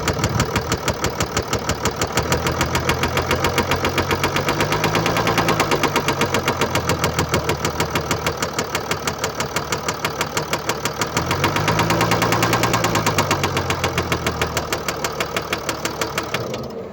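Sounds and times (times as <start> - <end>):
diesel engine knocking: 0.0 - 16.9.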